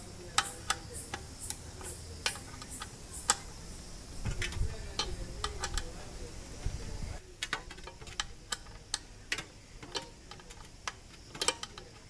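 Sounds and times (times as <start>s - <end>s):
sharp clicks and taps: 0.3s - 3.5s.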